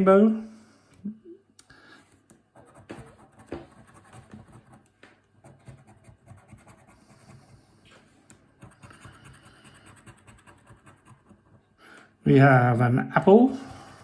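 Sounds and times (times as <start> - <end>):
scratch card being scratched: 2.6 - 7.5, 8.6 - 11.6.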